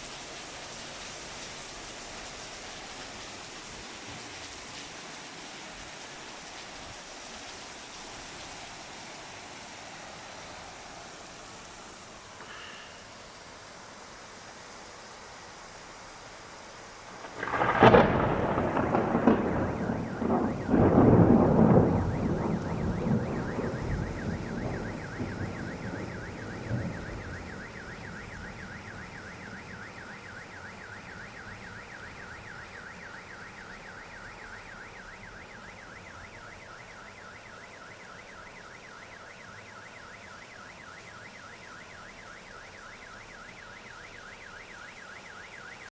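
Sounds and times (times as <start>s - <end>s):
heavy rain: 0.0s - 45.9s
thunder rumbling: 17.2s - 30.2s.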